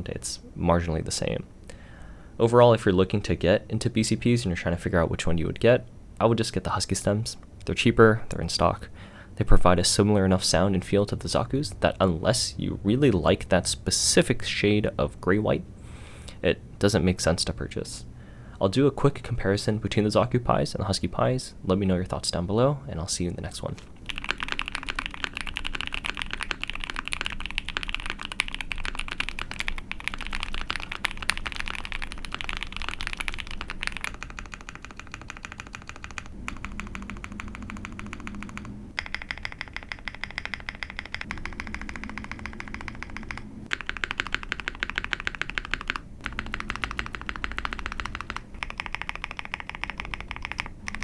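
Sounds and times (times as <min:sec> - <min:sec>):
typing on mechanical keyboard: 0:24.0 - 0:51.0.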